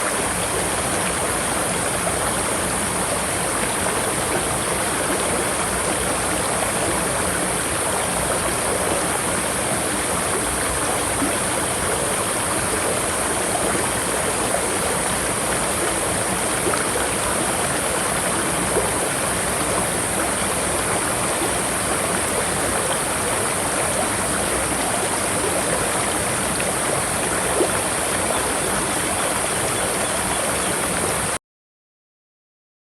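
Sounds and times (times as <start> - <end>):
river water rushing: 0.0 - 31.4.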